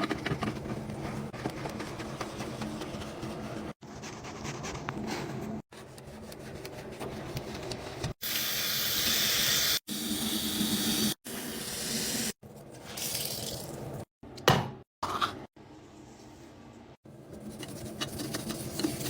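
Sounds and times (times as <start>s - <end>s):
water running: 8.2s - 14.1s.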